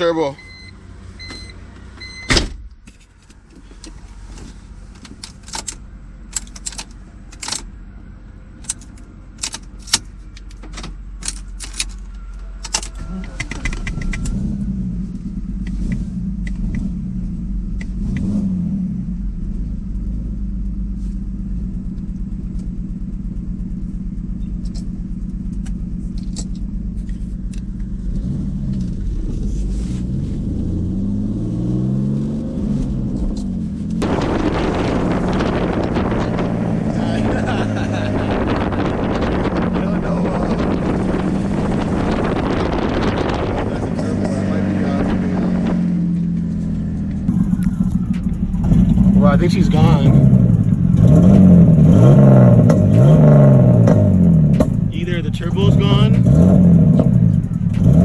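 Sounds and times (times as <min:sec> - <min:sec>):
car engine idling: 0:00.0 - 0:18.1, 0:19.0 - 0:30.2, 0:33.3 - 0:58.0.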